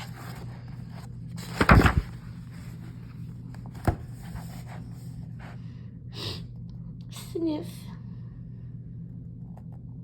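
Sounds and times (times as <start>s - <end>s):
book page turning: 0.0s - 5.1s
steady low hum: 0.0s - 10.0s.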